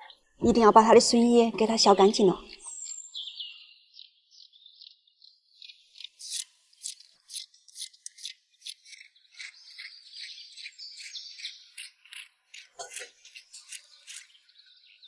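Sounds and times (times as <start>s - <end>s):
knife scraping bamboo shoots: 11.8s - 14.4s.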